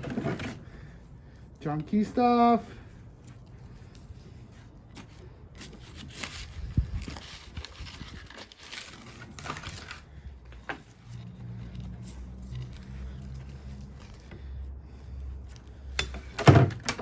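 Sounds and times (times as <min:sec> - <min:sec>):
wire scraping and rustling: 0:03.2 - 0:15.8.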